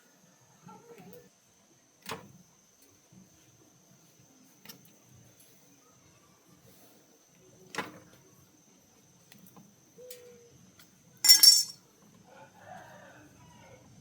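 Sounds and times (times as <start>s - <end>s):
loud double clink: 11.3s - 11.8s.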